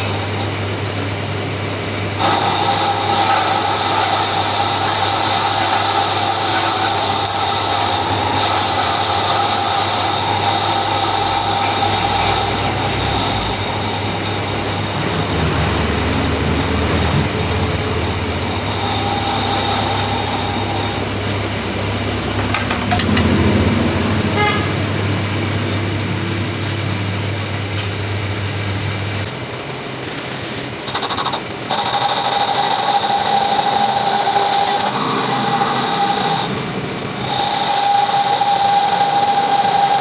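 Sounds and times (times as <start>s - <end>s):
machinery low hum: 0.0s - 29.6s
machinery high whine: 0.0s - 40.0s.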